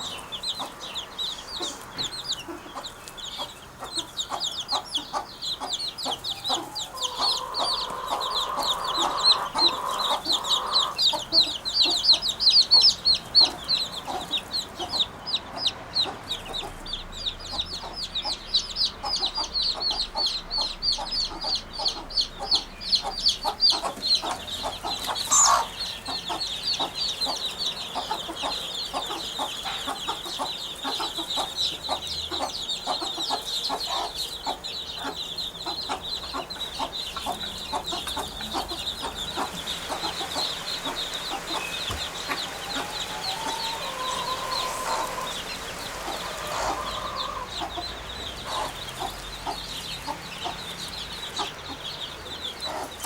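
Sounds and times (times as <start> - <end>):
birds chirping: 0.0 - 53.0.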